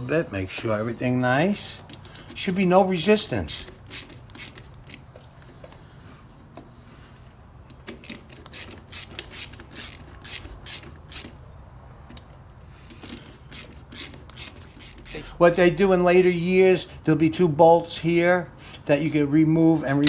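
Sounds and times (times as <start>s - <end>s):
wheel brake mechanical clicks: 1.8s - 5.8s, 7.7s - 16.3s.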